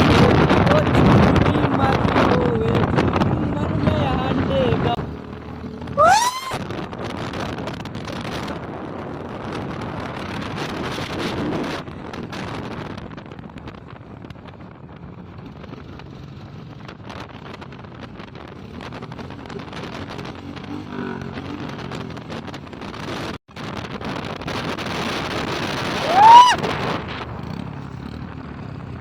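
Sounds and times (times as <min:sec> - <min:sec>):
motorcycle engine and road noise: 0:00.0 - 0:29.0
wind buffeting microphone: 0:00.0 - 0:29.0
rising and falling tone: 0:05.9 - 0:06.6, 0:26.0 - 0:26.6.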